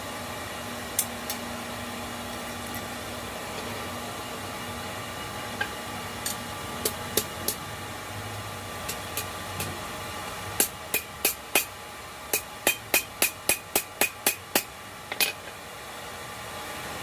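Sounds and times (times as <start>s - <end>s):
forge fire and blower hissing: 0.0s - 17.0s
hammer tapping hot metal: 10.6s - 11.7s, 12.3s - 14.7s.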